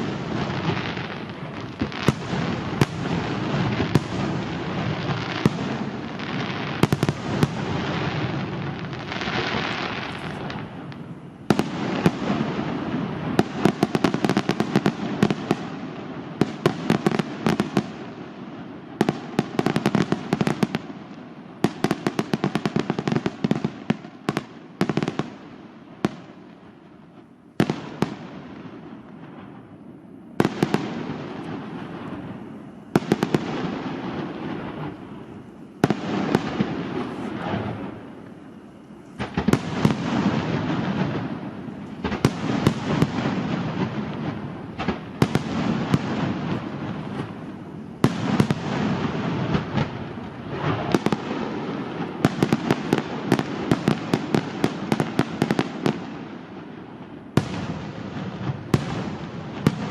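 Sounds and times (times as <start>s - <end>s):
fireworks bangs: 0.0s - 59.9s
fireworks crackle: 0.0s - 59.9s.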